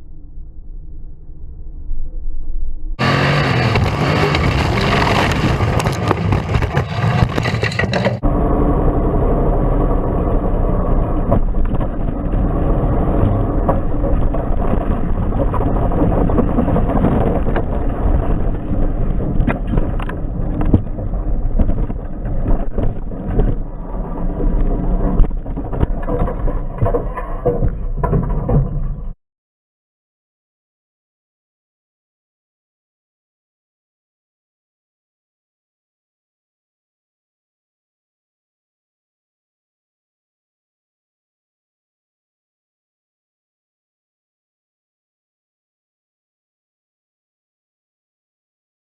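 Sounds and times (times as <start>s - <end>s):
knocks and jolts: 3.0s - 8.2s, 11.2s - 29.2s
race car engine running hard: 3.0s - 14.5s.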